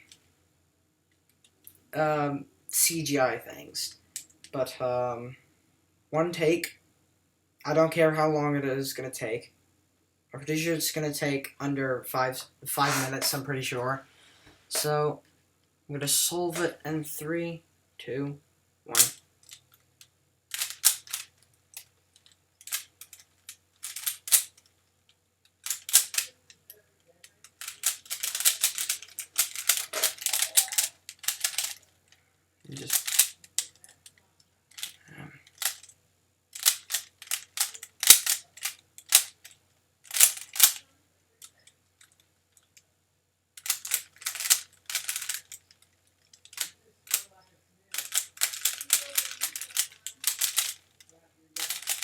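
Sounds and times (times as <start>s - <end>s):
puzzle cube clicking as twisted: 20.5s - 21.9s, 22.6s - 23.2s, 23.8s - 24.6s, 25.6s - 26.4s, 27.4s - 31.8s, 32.7s - 34.0s, 34.7s - 35.9s, 36.6s - 40.8s, 43.6s - 45.6s, 47.9s - 50.8s, 51.6s - 52.0s.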